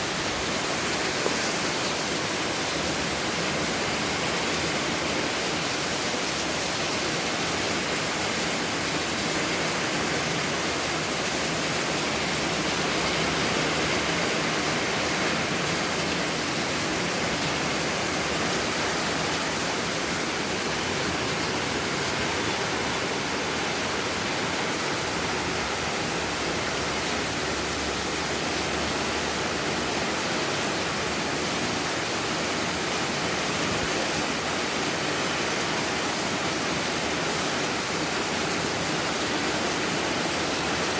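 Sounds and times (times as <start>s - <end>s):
heavy rain downpour: 0.0s - 40.9s.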